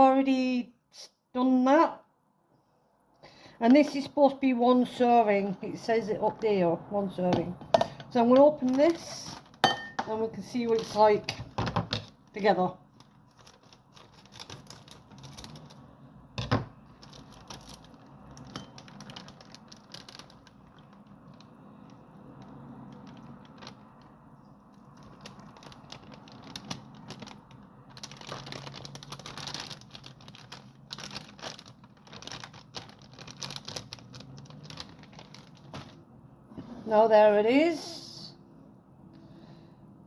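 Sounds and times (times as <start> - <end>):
plastic bag crinkling: 8.1 - 11.4, 12.0 - 36.0.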